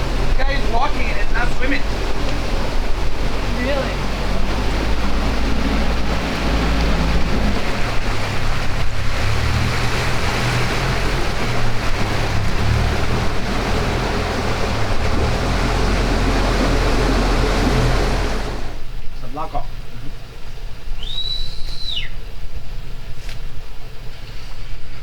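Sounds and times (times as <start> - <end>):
boat motor running: 0.0 - 18.9
wind buffeting microphone: 0.0 - 18.9
water rushing past hull: 0.0 - 25.0.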